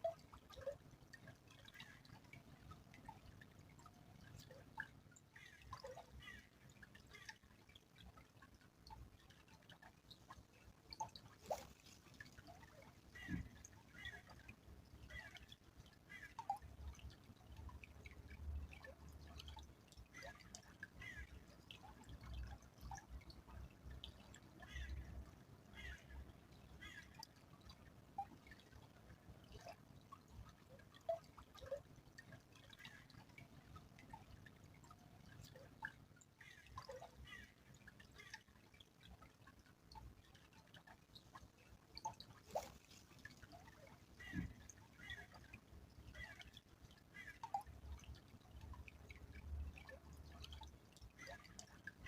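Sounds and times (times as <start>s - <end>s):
stream trickling: 0.0s - 52.0s
water drips and bubbling plops: 0.0s - 52.0s.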